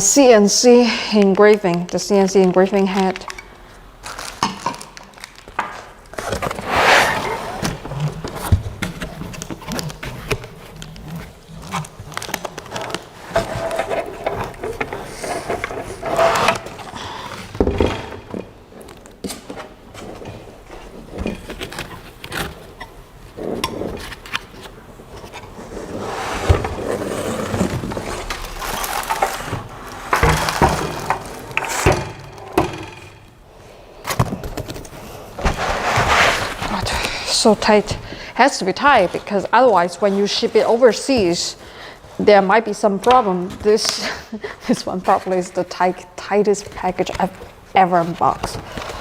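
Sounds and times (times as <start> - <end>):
parts scraping packaging: 4.0 - 17.6, 20.8 - 32.2.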